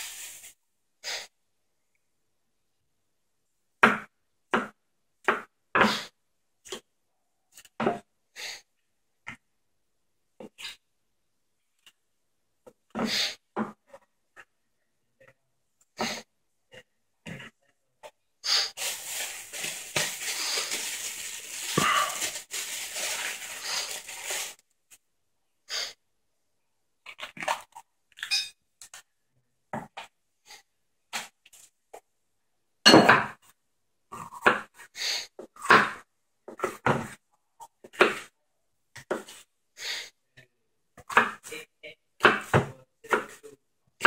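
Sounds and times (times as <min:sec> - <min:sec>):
rustling: 0:18.7 - 0:25.0.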